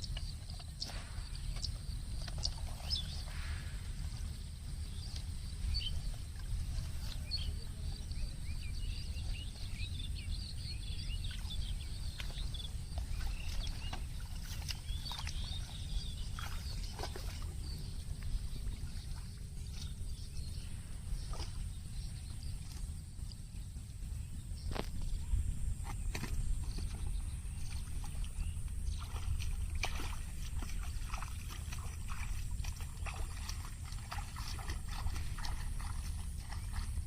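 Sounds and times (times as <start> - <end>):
bird chirps: 0.0 - 19.1
steady low rumble: 0.0 - 37.0.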